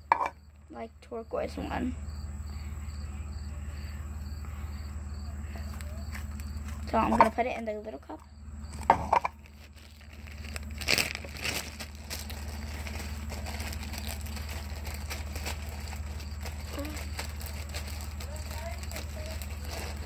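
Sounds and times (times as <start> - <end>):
steady low hum: 0.0 - 20.0
faint crackling: 5.4 - 20.0.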